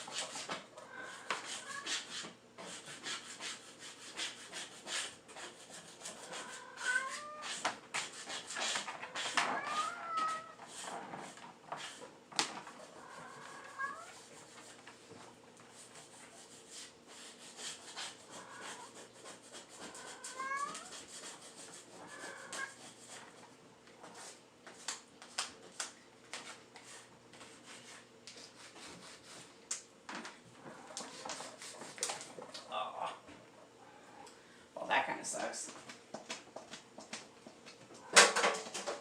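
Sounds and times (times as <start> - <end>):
cat meowing: 0.8 - 2.0, 6.3 - 7.6, 9.2 - 10.6, 13.0 - 14.2, 19.8 - 21.0.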